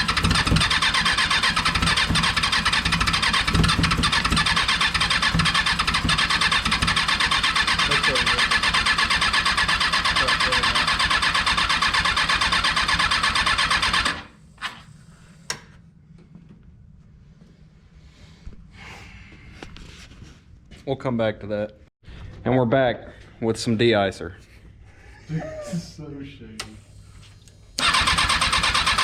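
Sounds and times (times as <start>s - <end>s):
motorcycle engine cranking: 0.0s - 14.8s, 27.8s - 29.0s.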